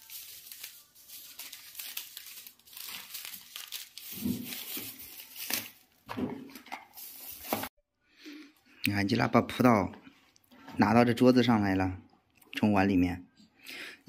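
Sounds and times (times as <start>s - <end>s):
packaging crinkling: 0.0s - 7.7s.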